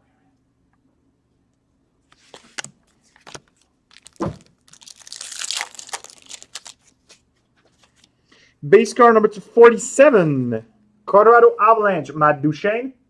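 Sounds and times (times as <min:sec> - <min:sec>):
wrapper tearing and crinkling: 0:02.3 - 0:07.2.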